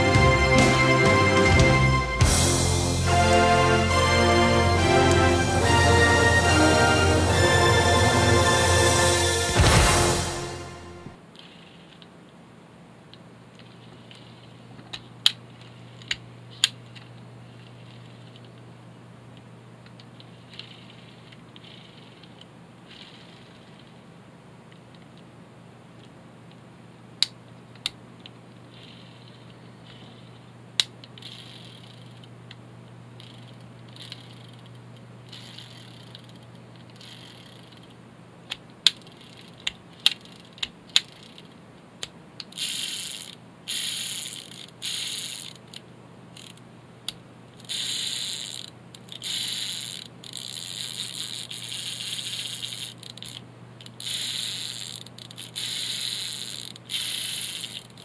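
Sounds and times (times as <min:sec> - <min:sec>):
sharp clicks of reel parts: 0:33.2 - 0:45.8, 0:46.4 - 0:58.0.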